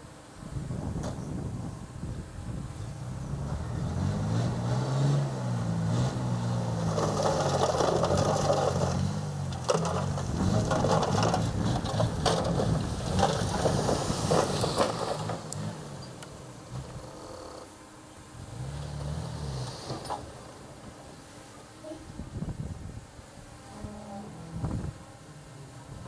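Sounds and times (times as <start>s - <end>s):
bulldozer diesel engine: 1.4s - 22.4s
soil and stones crunching: 5.9s - 17.8s.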